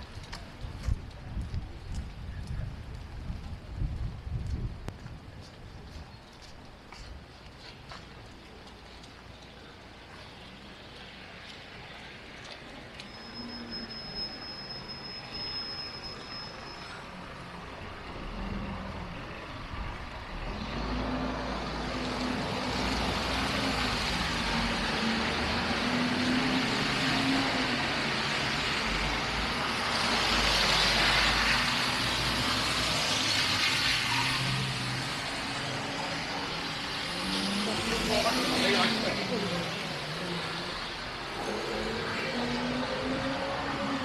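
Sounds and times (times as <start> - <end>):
thin high whine: 13.0 - 17.2.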